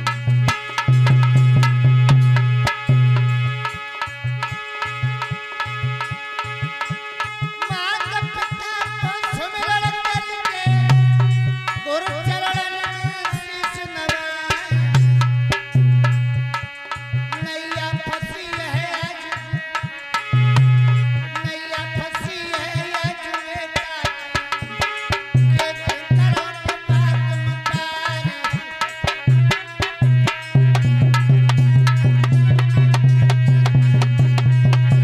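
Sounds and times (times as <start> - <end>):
hand drums beating quickly: 23.8 - 35.0
wavering melody line: 29.0 - 35.0.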